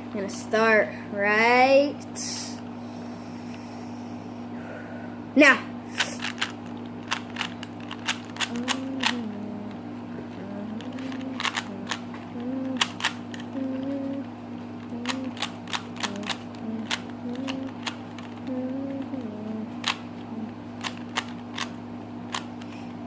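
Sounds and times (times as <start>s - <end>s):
steady low hum: 0.0s - 23.0s
puzzle cube plastic clicks: 6.0s - 9.3s, 10.7s - 14.2s, 14.8s - 20.1s, 20.8s - 22.7s.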